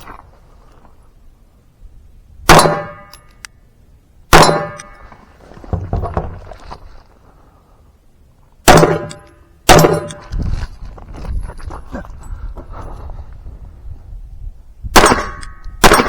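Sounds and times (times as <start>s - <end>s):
pistol shots: 2.5s - 3.1s, 4.3s - 4.9s, 8.7s - 10.2s, 15.0s - 16.0s.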